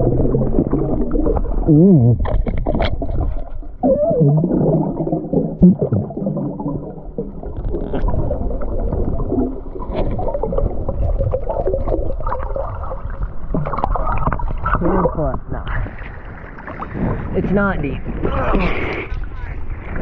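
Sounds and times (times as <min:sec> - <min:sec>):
knocks underwater: 0:00.0 - 0:03.8, 0:13.4 - 0:15.4
underwater gurgling and bubbling: 0:00.0 - 0:18.5.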